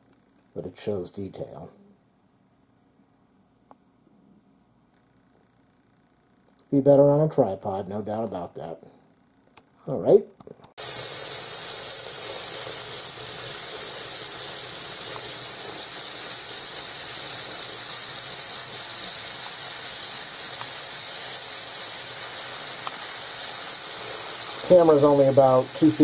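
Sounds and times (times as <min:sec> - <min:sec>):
tap water running into sink: 0:10.8 - 0:26.0.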